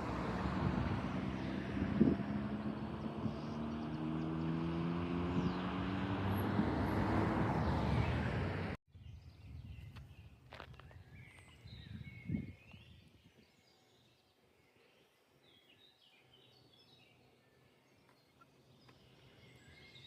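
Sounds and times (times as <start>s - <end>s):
passing vehicle engine and tyres: 0.0s - 8.8s
faint bird chirps: 9.0s - 20.0s.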